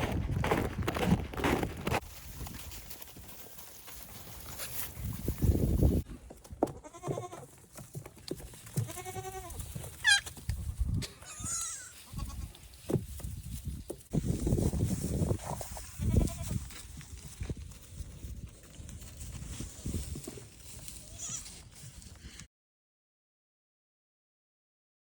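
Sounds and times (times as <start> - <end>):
livestock bleating: 6.8 - 7.5, 8.8 - 10.3, 11.2 - 12.6, 16.0 - 16.6, 21.0 - 21.6.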